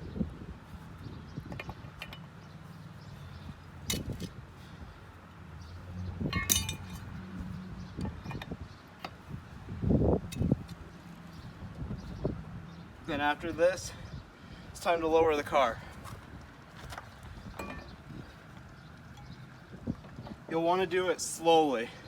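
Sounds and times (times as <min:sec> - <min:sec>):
lug wrench clinking on nuts: 0:01.4 - 0:02.4, 0:03.8 - 0:04.3, 0:06.2 - 0:07.2, 0:08.0 - 0:09.2, 0:17.5 - 0:18.1, 0:19.1 - 0:19.5.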